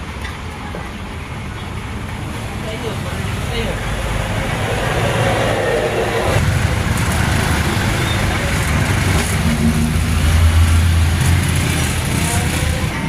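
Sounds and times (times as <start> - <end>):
deeper steady tone: 3.7 - 6.8.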